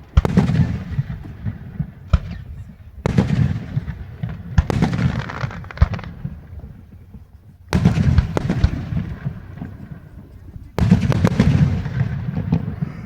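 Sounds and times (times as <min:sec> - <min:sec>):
fireworks bangs: 0:00.0 - 0:13.0
fireworks crackling: 0:00.0 - 0:13.0.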